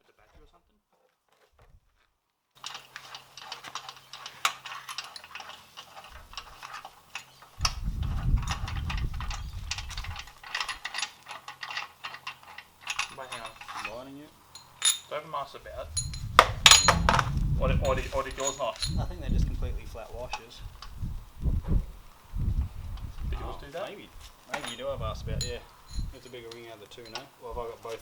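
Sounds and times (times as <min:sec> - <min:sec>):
metal parts clinking: 0:02.6 - 0:15.2, 0:15.8 - 0:19.2, 0:24.5 - 0:27.3
low rumble: 0:15.6 - 0:19.7.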